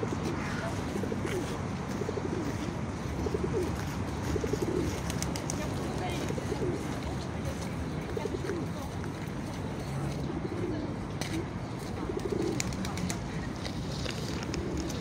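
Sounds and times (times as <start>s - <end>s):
low outdoor background noise: 0.0s - 15.0s
pigeons cooing: 1.1s - 5.4s, 6.1s - 7.0s, 10.2s - 13.0s, 14.0s - 15.0s.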